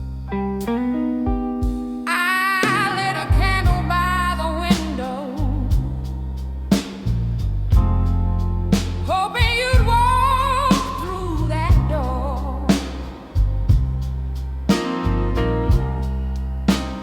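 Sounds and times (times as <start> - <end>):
bass line: 0.0 - 17.0
drum beat: 12.7 - 17.0.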